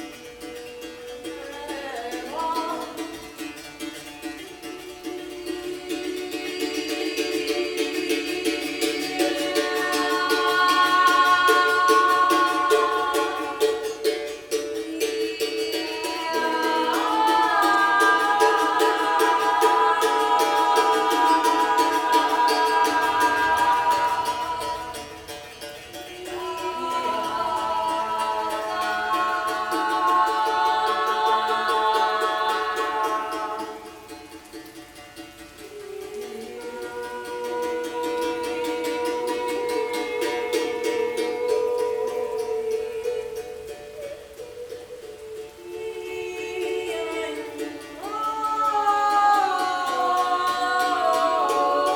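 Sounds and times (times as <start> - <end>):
plucked strings: 0.0 - 45.6
voices singing in harmony: 0.0 - 51.9.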